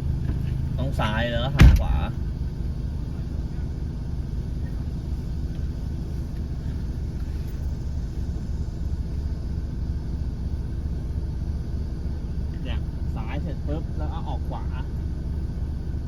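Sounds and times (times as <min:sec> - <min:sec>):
car driving on rocky track: 0:00.0 - 0:11.6.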